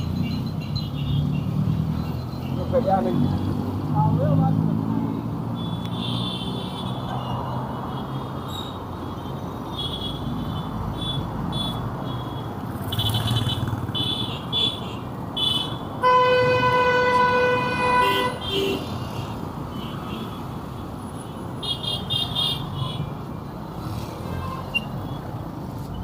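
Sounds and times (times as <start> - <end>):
road traffic rumble: 0.0 - 26.0
long loud vehicle horn: 15.4 - 18.8.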